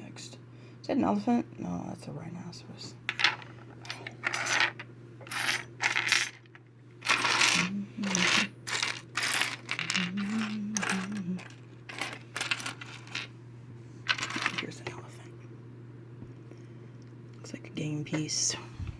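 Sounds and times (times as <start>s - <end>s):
figurines clattering on table: 3.1s - 13.3s, 14.1s - 14.8s.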